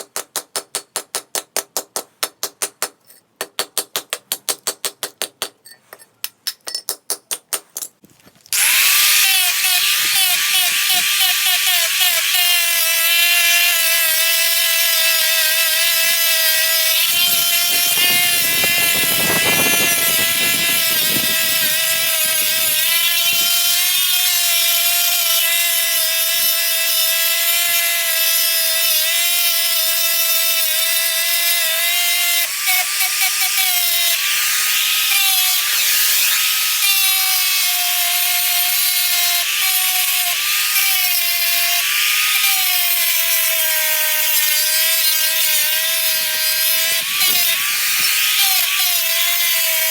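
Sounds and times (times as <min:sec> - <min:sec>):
rough grinding noise: 0:08.2 - 0:27.9, 0:32.5 - 0:49.9
power tool motor whine: 0:08.5 - 0:28.4, 0:31.2 - 0:49.9.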